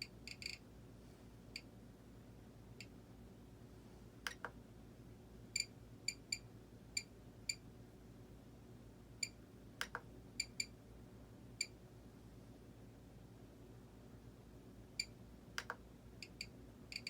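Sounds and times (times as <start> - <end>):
switch clicks: 4.2 - 4.6, 9.8 - 10.0, 15.6 - 15.8.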